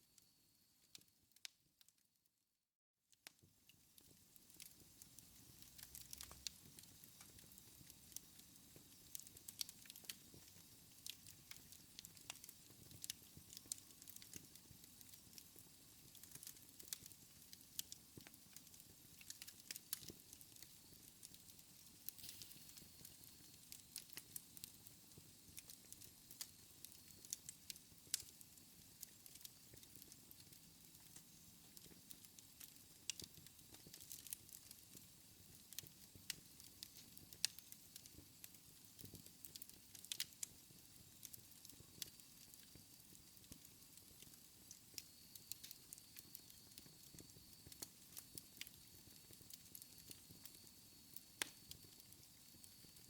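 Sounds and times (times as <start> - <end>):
wood fire crackling: 3.2 - 53.0.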